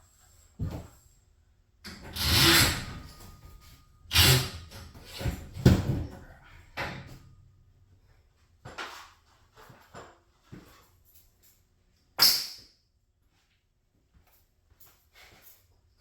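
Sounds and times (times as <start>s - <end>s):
clattering knocks and scrapes: 1.9s - 7.5s.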